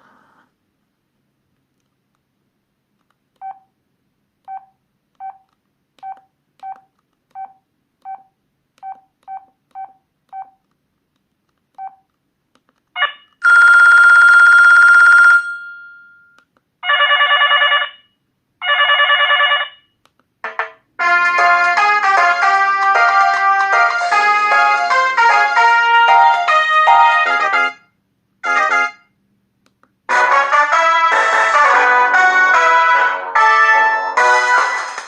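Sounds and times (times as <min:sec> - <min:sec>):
phone ringtone: 0:13.4 - 0:19.9, 0:22.2 - 0:27.8.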